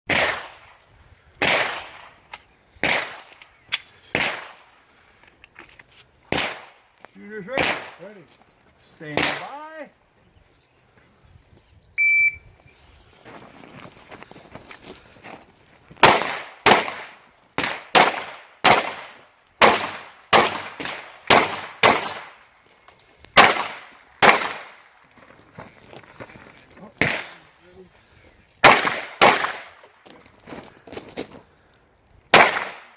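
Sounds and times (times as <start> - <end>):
pistol shots echoing: 0.1 - 0.7, 1.4 - 2.2, 2.8 - 3.4, 4.1 - 4.7, 6.3 - 6.9, 7.6 - 8.0, 9.1 - 9.6, 16.0 - 22.4, 23.4 - 24.9, 27.0 - 27.5, 28.6 - 29.8, 32.3 - 32.9
sharp cracks: 0.1 - 4.8, 6.3 - 8.3, 9.0 - 9.7, 15.9 - 25.3, 26.8 - 27.6, 28.6 - 30.6, 32.3 - 32.9.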